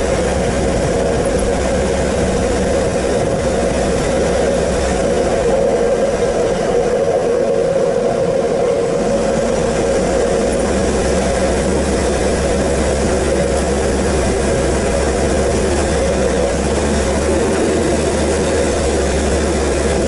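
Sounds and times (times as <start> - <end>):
tyres on rough dirt: 0.0 - 7.1, 8.8 - 20.0
vehicle engine drone: 0.0 - 20.0.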